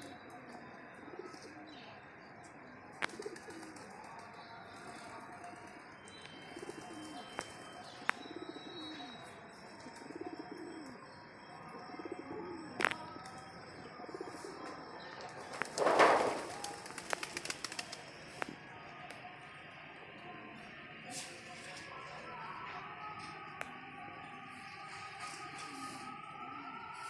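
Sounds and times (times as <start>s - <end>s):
pigeons cooing: 0.0s - 2.0s, 3.0s - 3.9s, 6.4s - 18.0s.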